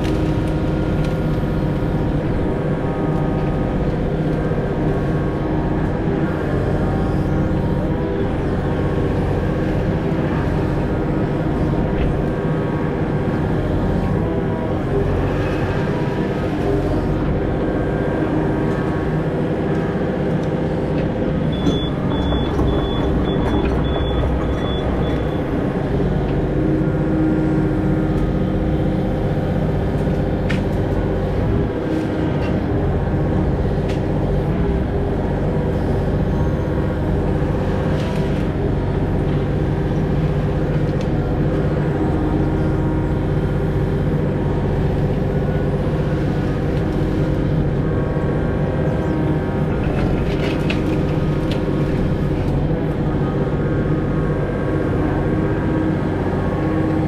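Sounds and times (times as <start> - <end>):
excavator diesel engine running: 0.0 - 57.0.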